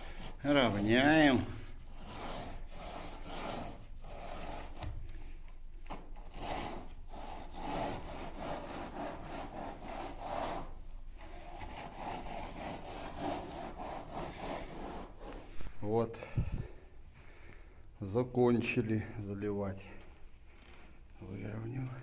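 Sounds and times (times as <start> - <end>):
tool scraping wet concrete: 0.0 - 5.1, 6.0 - 16.0.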